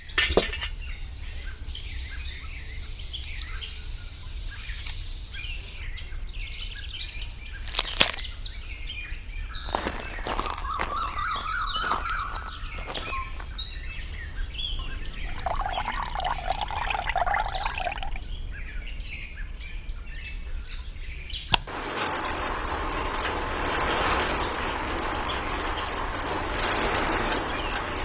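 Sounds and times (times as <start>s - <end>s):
small birds chirping: 1.0s - 5.8s, 9.5s - 18.5s
steady hiss: 1.4s - 5.8s
sharp click: 21.5s - 21.7s.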